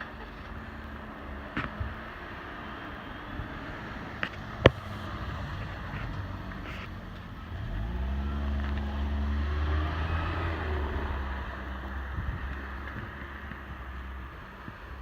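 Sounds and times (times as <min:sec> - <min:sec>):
motor vehicle driving past: 0:02.6 - 0:14.1.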